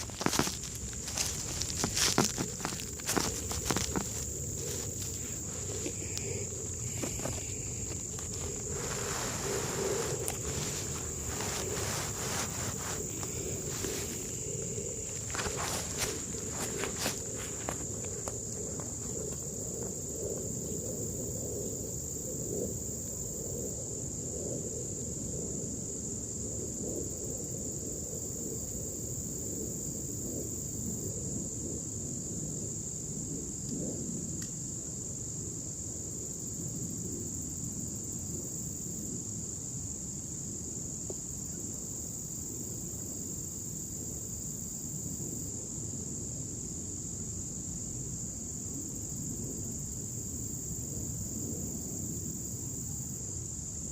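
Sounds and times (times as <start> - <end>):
crickets trilling: 0.0 - 53.9.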